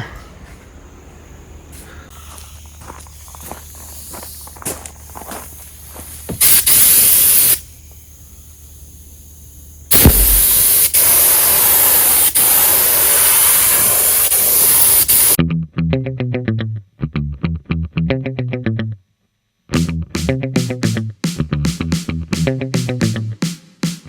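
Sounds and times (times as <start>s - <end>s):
spray gun hissing: 5.7s - 15.4s.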